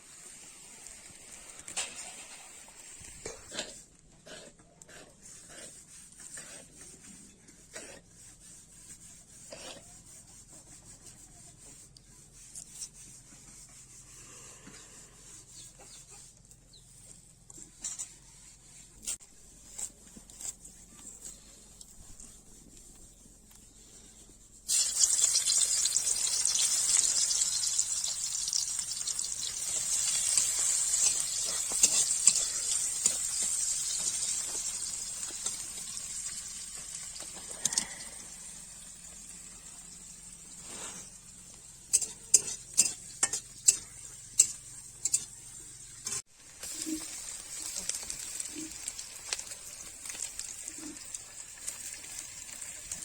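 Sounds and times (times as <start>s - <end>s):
food frying in hot oil: 0.0s - 3.6s, 24.7s - 53.0s.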